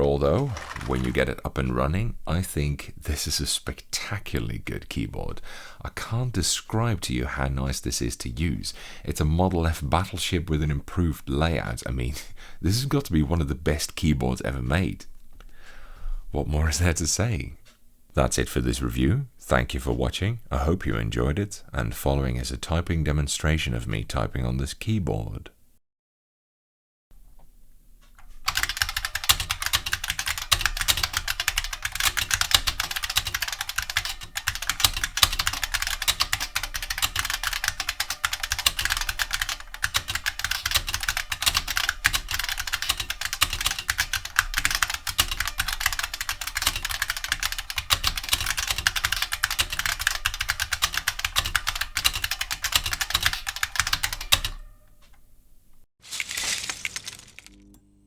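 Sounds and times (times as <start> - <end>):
fast typing on keyboard: 0.0 - 1.4, 28.5 - 54.7.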